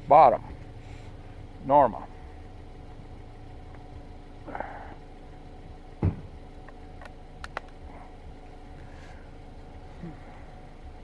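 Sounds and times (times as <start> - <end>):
low background hum: 0.0 - 11.0
small sharp clicks: 6.6 - 7.8.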